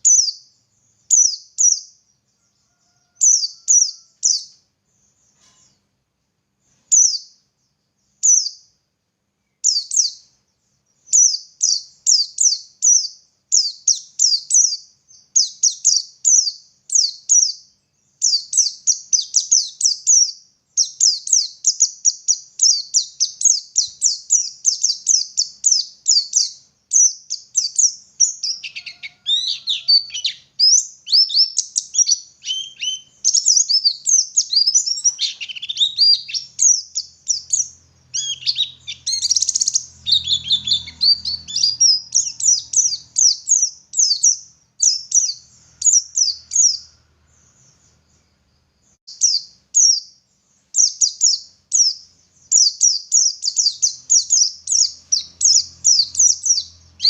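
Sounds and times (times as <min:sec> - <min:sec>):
bird singing high notes: 0:28.2 - 0:46.9.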